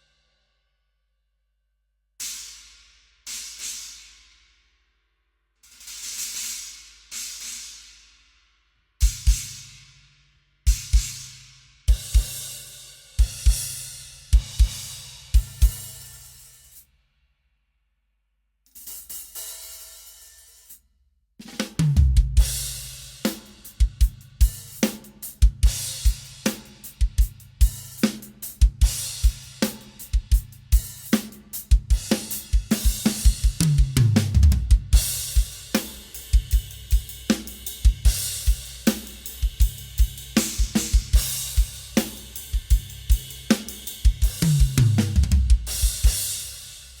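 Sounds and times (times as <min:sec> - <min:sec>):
hi-hat and cymbal wash: 0:02.2 - 0:04.6, 0:05.6 - 0:08.4, 0:10.7 - 0:16.9, 0:22.3 - 0:47.0
drum kit groove: 0:09.0 - 0:09.9, 0:10.7 - 0:16.8, 0:21.4 - 0:47.0.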